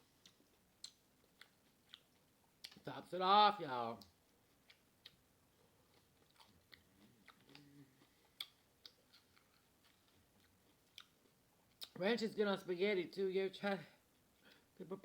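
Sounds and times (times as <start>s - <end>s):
chewing crunchy chips: 0.0s - 2.9s, 3.9s - 12.0s.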